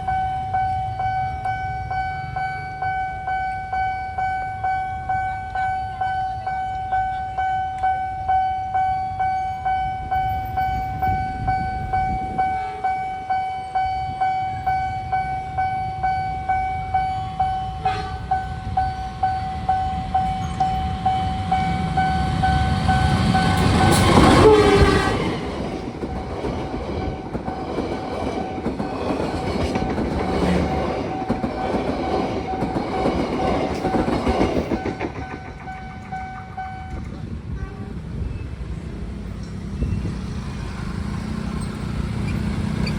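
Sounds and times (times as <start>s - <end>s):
train wheels clattering over rails: 18.9s - 37.5s.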